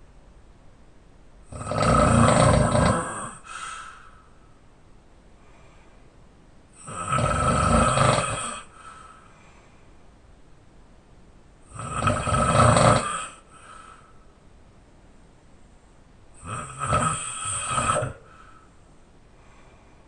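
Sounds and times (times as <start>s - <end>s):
loud open-mouth snoring: 1.5s - 3.6s, 6.8s - 8.8s, 11.7s - 13.5s, 16.4s - 18.3s
soft breath: 3.4s - 4.7s, 5.3s - 6.3s, 8.6s - 10.2s, 13.4s - 14.5s, 18.1s - 20.0s.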